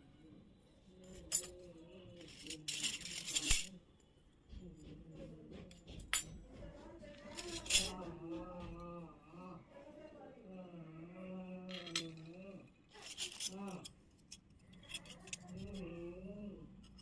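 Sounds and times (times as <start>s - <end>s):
faint background music: 0.0s - 17.0s
toy kitchen pieces clinking: 1.0s - 3.8s, 7.1s - 8.1s, 11.7s - 15.8s
rustling or scraping: 1.1s - 3.8s, 4.8s - 8.8s, 12.9s - 15.9s.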